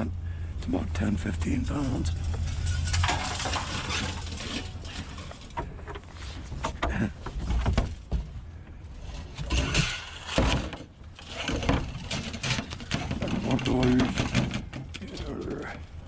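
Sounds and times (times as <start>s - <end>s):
steady low rumble: 0.0s - 9.2s
scrap metal clanking: 0.7s - 8.4s, 9.0s - 15.9s.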